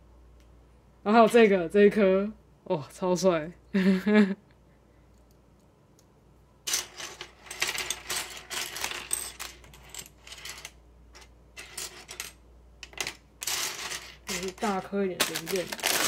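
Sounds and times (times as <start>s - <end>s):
plastic toy bricks clattering: 6.8s - 16.0s.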